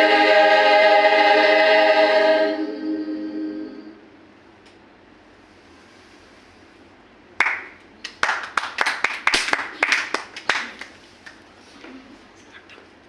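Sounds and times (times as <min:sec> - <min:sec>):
people clapping: 0:07.4 - 0:11.5.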